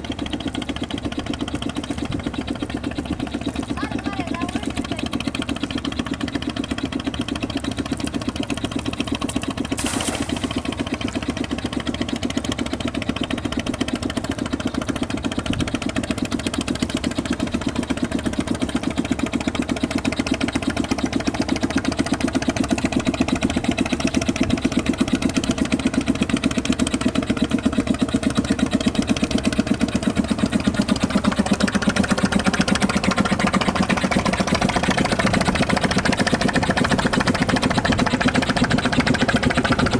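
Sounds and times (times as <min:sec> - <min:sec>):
small engine chugging: 0:00.0 - 0:39.9.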